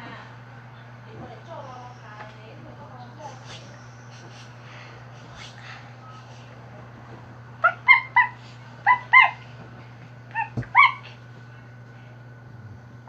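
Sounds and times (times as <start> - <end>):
small dog yipping and whimpering: 7.6 - 9.4, 10.3 - 11.2.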